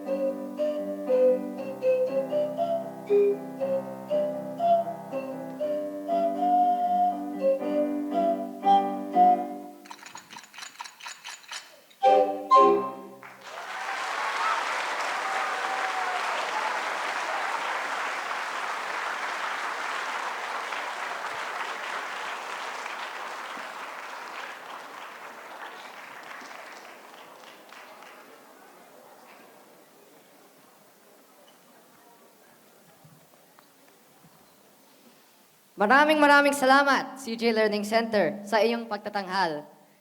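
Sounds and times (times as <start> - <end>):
audience applauding: 13.2 - 29.4.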